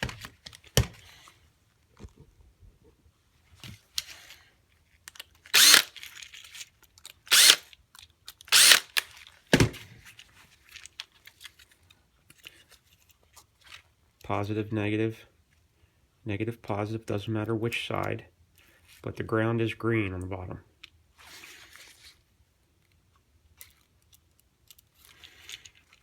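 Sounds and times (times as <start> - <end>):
cordless drill whirring: 5.5 - 6.0, 7.3 - 7.6, 8.5 - 9.1.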